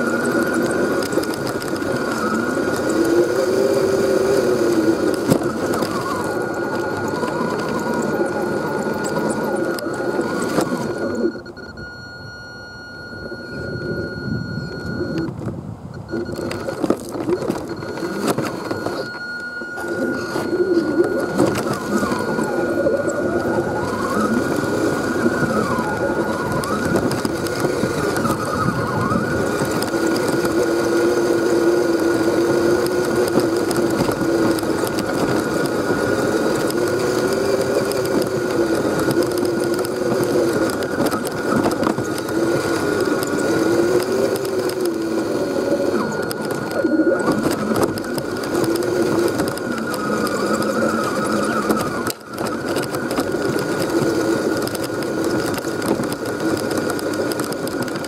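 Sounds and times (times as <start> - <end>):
steady high tone: 0.0 - 15.3, 16.0 - 29.6
electric motor and gears whining: 0.0 - 58.0.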